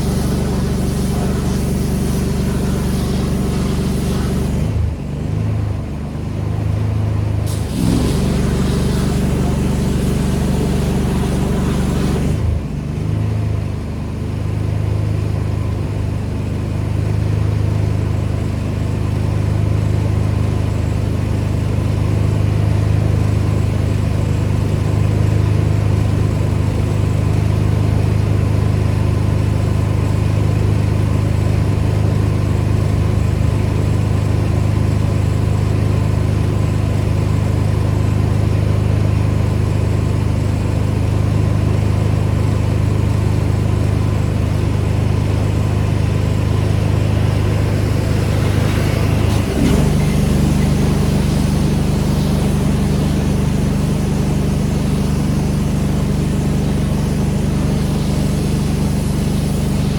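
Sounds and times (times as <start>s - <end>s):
gas engine droning: 0.0s - 13.3s, 29.9s - 59.9s.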